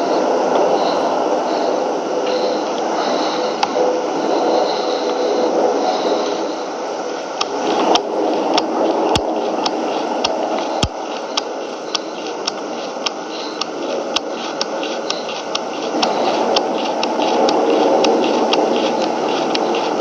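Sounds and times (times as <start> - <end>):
turboprop aircraft flyover: 0.0 - 20.0
sharp clicks: 7.4 - 20.0.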